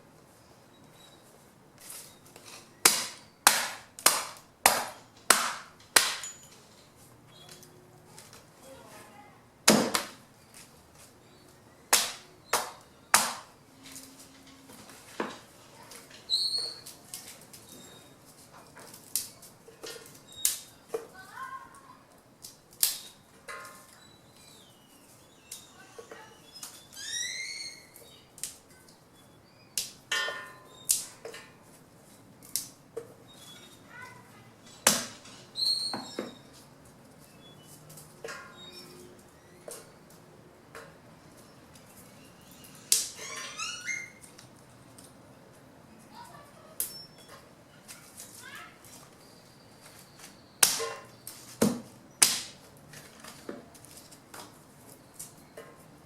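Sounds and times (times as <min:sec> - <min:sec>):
branches snapping: 0:02.4 - 0:06.4, 0:09.7 - 0:10.2, 0:11.9 - 0:14.1, 0:22.4 - 0:23.1, 0:32.4 - 0:32.8, 0:42.8 - 0:43.2, 0:50.2 - 0:54.5
birds chirping: 0:10.3 - 0:15.0, 0:23.0 - 0:29.8, 0:33.0 - 0:52.3.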